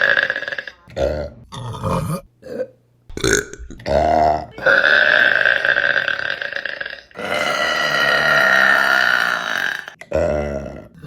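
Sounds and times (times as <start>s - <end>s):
woman burping: 0.0s - 11.0s.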